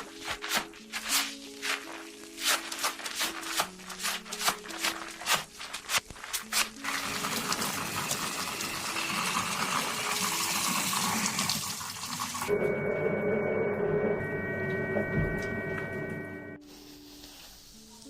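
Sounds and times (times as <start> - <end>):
water running: 0.0 - 12.8
soft background music: 0.0 - 18.0.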